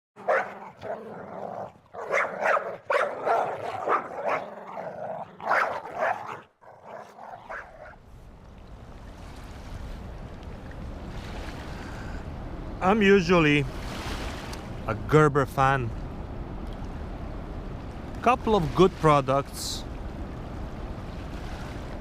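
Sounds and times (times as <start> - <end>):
dog barking and yipping: 0.2 - 8.0.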